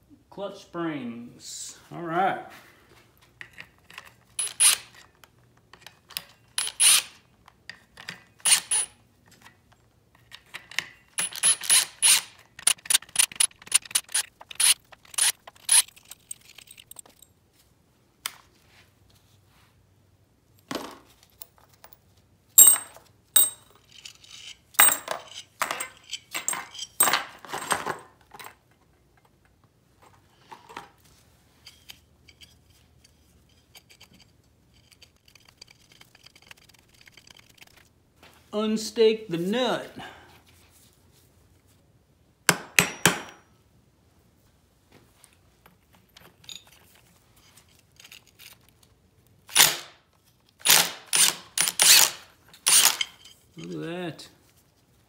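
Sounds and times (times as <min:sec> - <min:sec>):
metallic clicks and clinks: 0:10.2 - 0:17.3, 0:22.6 - 0:28.6, 0:45.6 - 0:48.9, 0:50.6 - 0:53.8.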